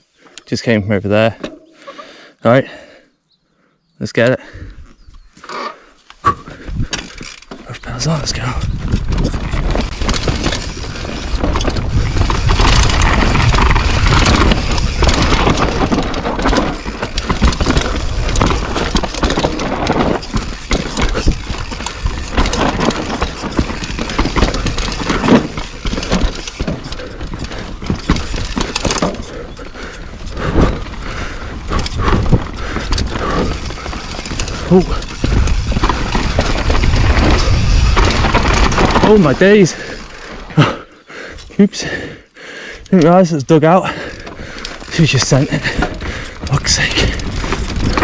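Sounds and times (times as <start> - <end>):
bike knocking and rattling: 6.2 - 40.8, 43.0 - 48.0
tyres rolling over dirt and rocks: 6.3 - 40.8, 42.9 - 48.0
wind rumble on microphone: 7.9 - 28.6, 29.2 - 39.0.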